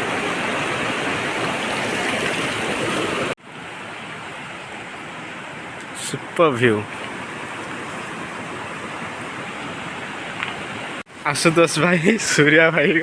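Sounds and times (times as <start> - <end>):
waterfall rushing: 0.0 - 11.0.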